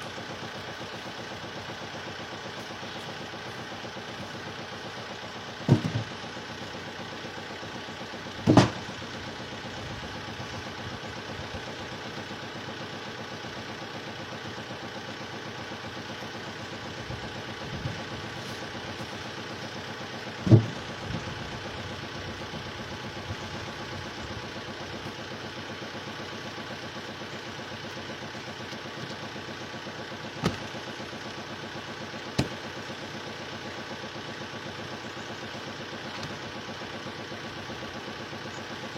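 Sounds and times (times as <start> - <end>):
engine idling: 0.0 - 38.9
sharp knocks: 5.7 - 6.1, 8.4 - 8.8.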